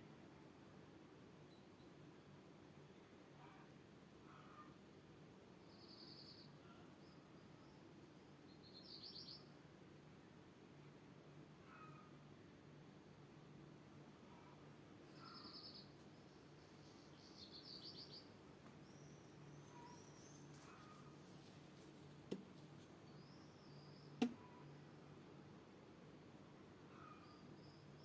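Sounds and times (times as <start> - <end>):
birds chirping: 14.4 - 21.2
sharp clicks: 24.2 - 24.4.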